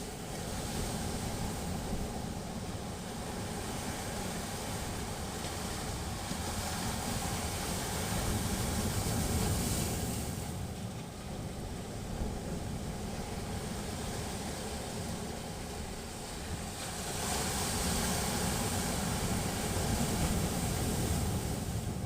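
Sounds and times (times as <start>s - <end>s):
sea waves washing onto shore: 0.0s - 22.0s.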